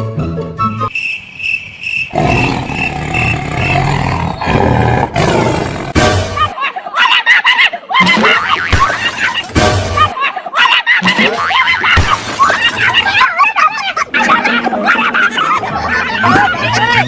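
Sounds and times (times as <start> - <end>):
lion roar: 2.1 - 6.0.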